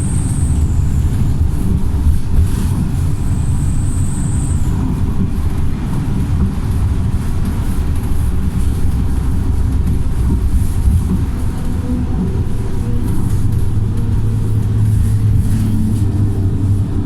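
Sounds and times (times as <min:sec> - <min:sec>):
thin high whistle: 0:00.0 - 0:01.4, 0:03.2 - 0:04.8
bus diesel engine droning: 0:00.0 - 0:17.0.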